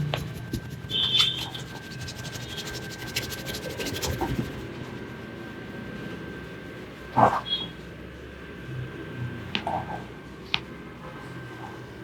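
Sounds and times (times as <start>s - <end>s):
hands scratching through hair: 0.0s - 4.6s.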